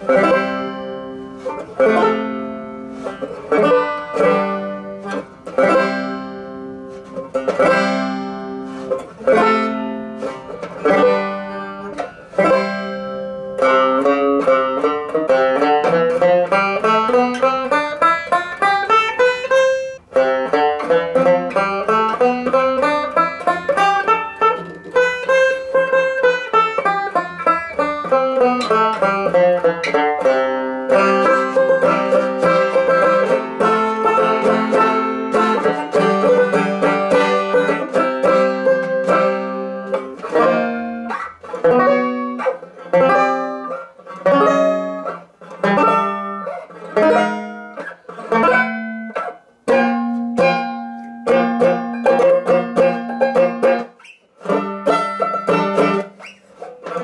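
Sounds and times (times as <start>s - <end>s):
banjo playing: 0.0s - 57.0s.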